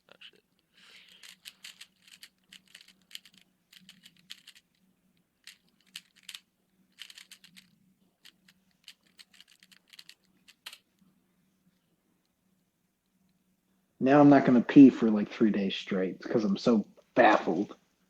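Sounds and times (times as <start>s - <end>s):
puzzle cube plastic clicking: 0.0s - 4.8s, 5.4s - 10.9s.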